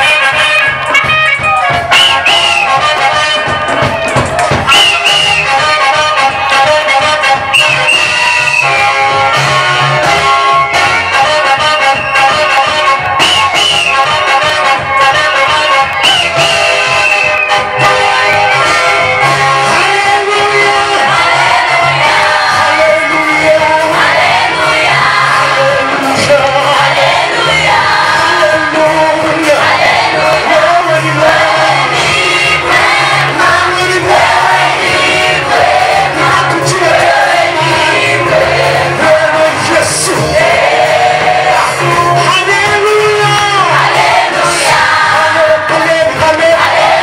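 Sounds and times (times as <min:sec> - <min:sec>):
band accompaniment: 0:00.0 - 0:47.0
steady bass line: 0:00.0 - 0:47.0
vocal group singing gospel: 0:19.6 - 0:47.0.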